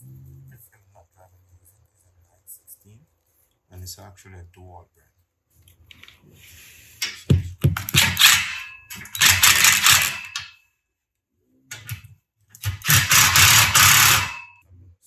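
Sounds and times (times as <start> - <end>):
cordless drill driving bolts: 7.8 - 10.5, 12.6 - 14.5.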